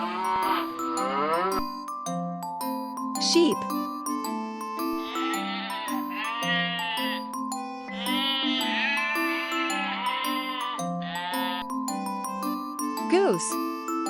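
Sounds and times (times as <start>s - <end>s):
sheep bleating: 0.0s - 1.6s, 5.0s - 7.3s, 7.9s - 11.8s
marimba and glockenspiel tune: 0.0s - 14.0s.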